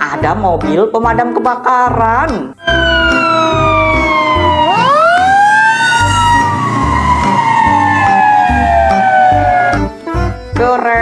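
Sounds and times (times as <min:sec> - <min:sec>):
fire engine siren wailing: 0:02.6 - 0:09.9
low bass beat: 0:02.6 - 0:09.9.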